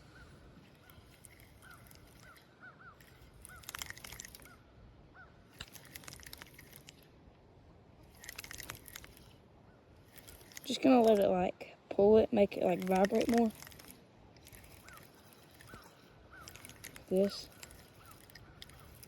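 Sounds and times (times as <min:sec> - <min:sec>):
birds chirping: 0:00.0 - 0:07.0, 0:08.2 - 0:19.0
sharp clicking bursts: 0:03.0 - 0:04.6, 0:05.5 - 0:07.1, 0:08.0 - 0:09.4, 0:10.0 - 0:11.4, 0:12.6 - 0:19.0.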